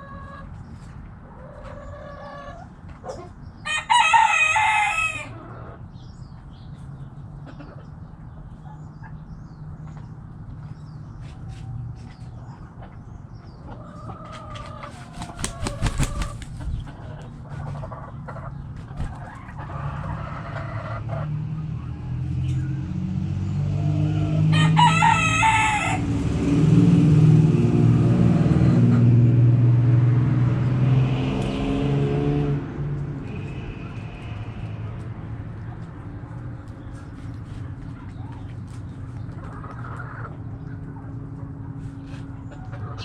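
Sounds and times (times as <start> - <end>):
hens clucking: 0.0 - 3.4, 12.2 - 21.3, 37.8 - 43.0
rooster crowing: 3.6 - 5.4, 24.4 - 26.2
vehicle engine rumble: 26.0 - 43.0.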